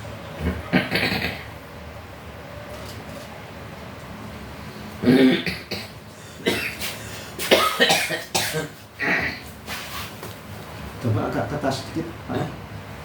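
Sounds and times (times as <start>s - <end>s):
person coughing: 5.0s - 9.4s.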